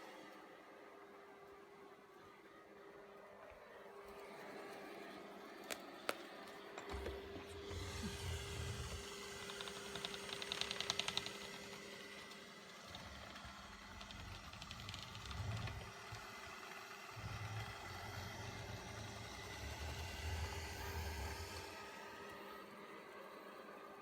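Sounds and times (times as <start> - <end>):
robot vacuum humming: 6.8 - 22.9
rapid clicking rattle: 7.9 - 21.5.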